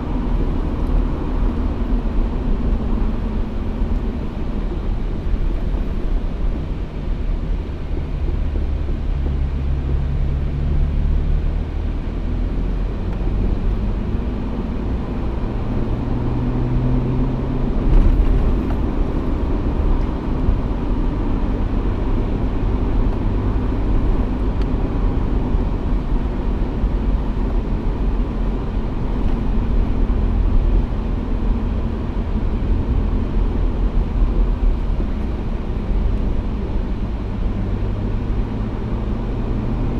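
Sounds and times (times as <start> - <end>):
off-road vehicle engine rumble: 0.0 - 39.9.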